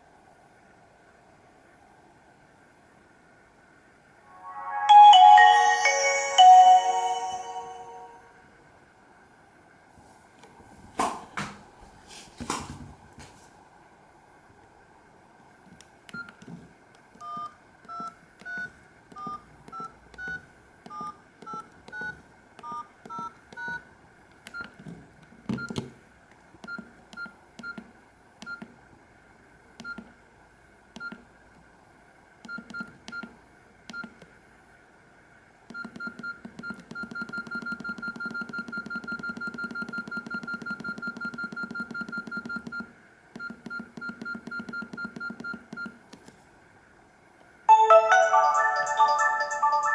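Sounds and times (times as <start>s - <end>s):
mobile phone beep ringtone: 4.4s - 8.3s, 47.7s - 49.9s.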